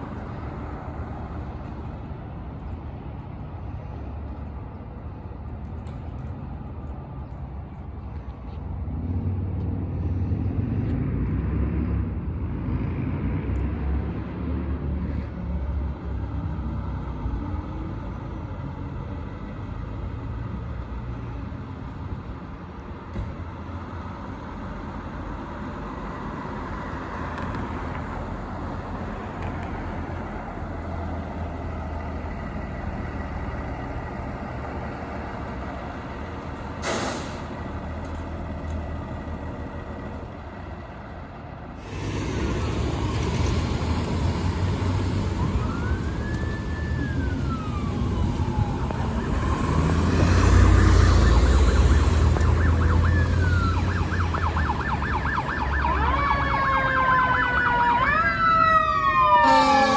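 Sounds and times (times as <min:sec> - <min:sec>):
fire truck engine rumble: 0:00.0 - 0:59.9
street traffic: 0:00.0 - 0:59.9
siren wailing: 0:45.0 - 0:59.9.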